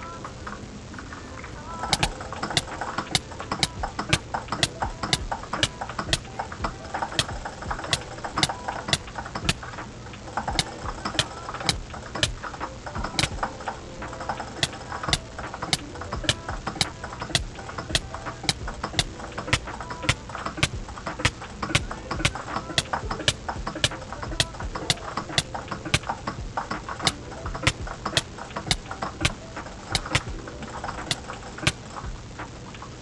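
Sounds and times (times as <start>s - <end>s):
keyboard and mouse clicking: 2.0s - 6.3s, 30.0s - 30.3s.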